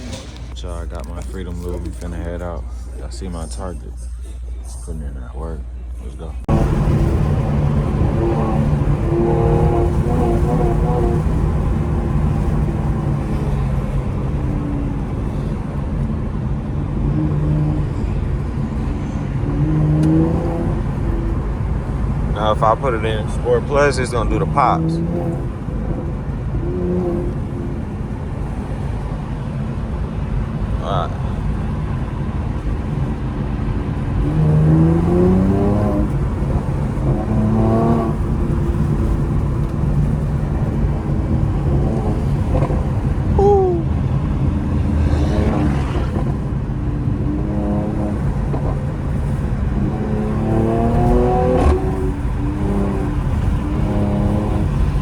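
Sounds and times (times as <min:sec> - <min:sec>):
car engine rumble while driving: 0:00.0 - 0:55.0.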